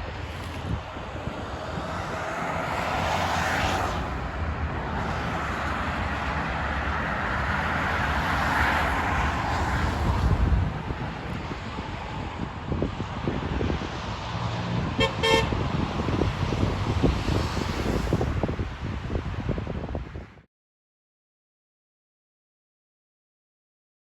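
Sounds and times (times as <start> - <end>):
passing motor vehicle: 0.0 - 20.5.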